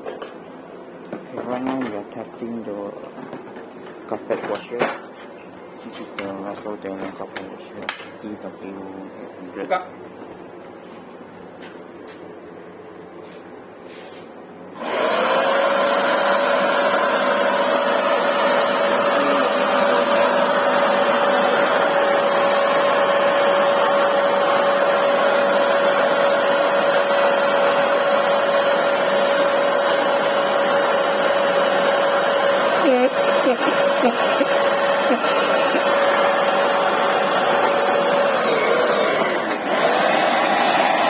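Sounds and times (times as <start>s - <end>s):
carpet washer suction motor whine: 14.8s - 41.0s.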